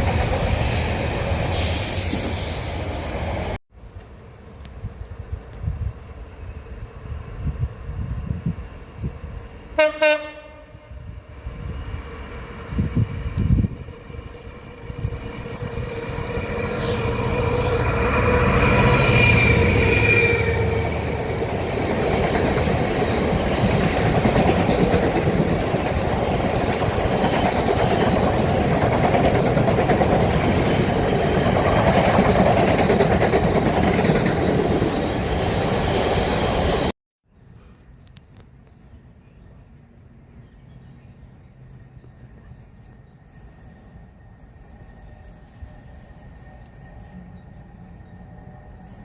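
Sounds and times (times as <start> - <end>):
train wheels rumbling on rail: 0.0 - 36.9.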